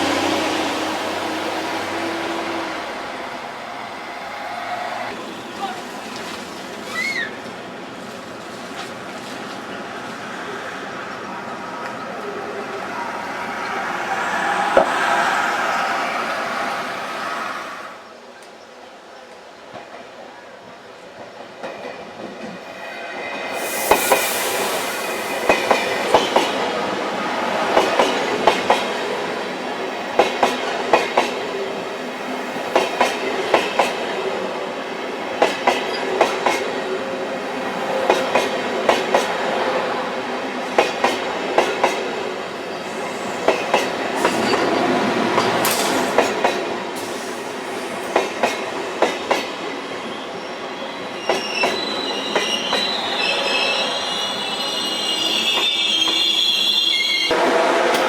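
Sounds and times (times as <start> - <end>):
train rumble: 0.0 - 18.2, 19.7 - 49.7
train wheels clicking over rail joints: 43.3 - 49.6.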